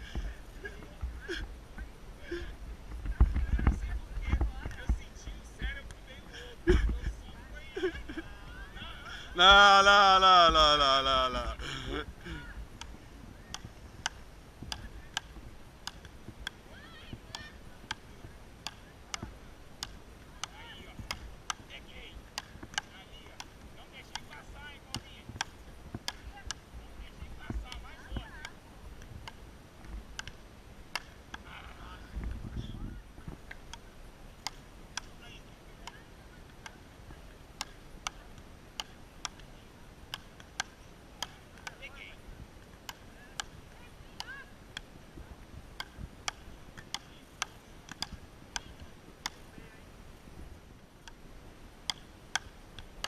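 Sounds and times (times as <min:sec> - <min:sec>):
wooden paddles hitting ball: 0:12.8 - 0:16.6, 0:17.2 - 0:21.7, 0:22.3 - 0:29.4, 0:30.2 - 0:31.5, 0:37.6 - 0:38.2, 0:38.8 - 0:39.5, 0:40.1 - 0:41.8, 0:42.6 - 0:43.6, 0:45.8 - 0:49.5, 0:51.9 - 0:53.0.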